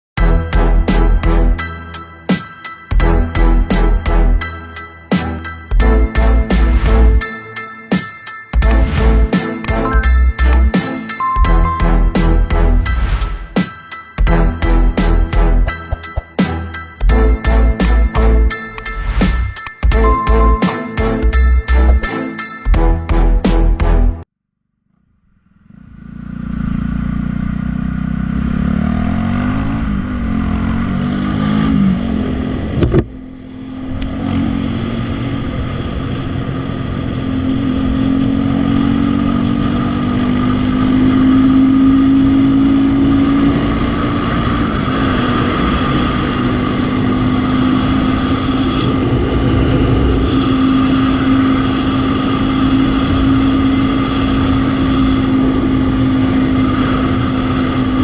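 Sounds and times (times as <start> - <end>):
motorcycle engine revving: 25.6 - 32.5.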